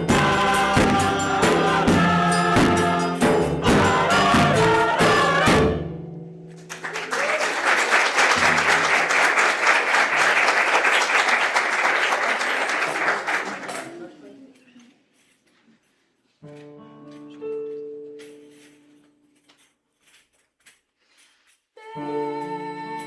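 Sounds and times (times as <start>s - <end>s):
choir singing with instruments: 0.0s - 6.1s
audience applauding: 6.5s - 14.1s.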